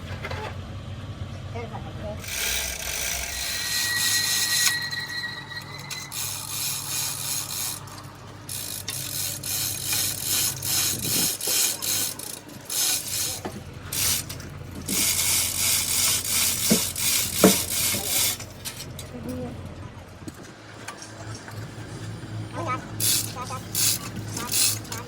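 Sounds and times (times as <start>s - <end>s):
hand tool rasping back and forth: 2.2s - 18.4s, 23.0s - 25.0s.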